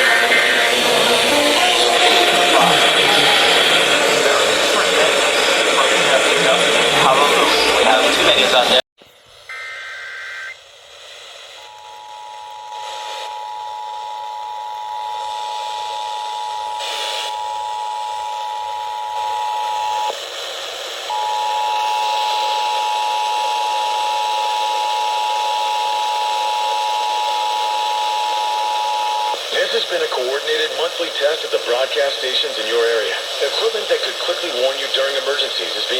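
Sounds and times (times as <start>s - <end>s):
radio hiss: 0.0s - 35.9s
two-tone alert signal: 9.5s - 10.6s.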